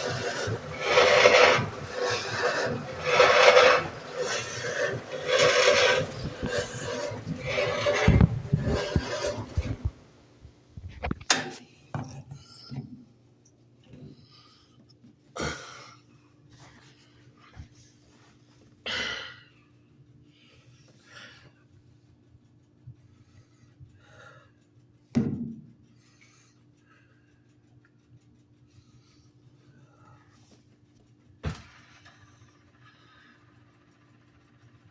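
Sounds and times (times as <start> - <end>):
short scraping noises: 0.0 - 10.0
washing machine grinding: 0.0 - 10.4, 30.4 - 34.9.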